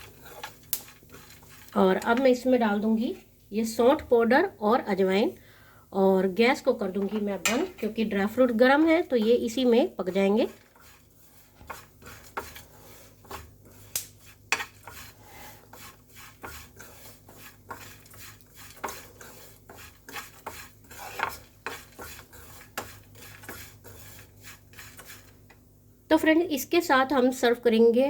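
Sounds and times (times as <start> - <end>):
utensil scraping a pan: 0.0 - 2.6, 6.8 - 25.5.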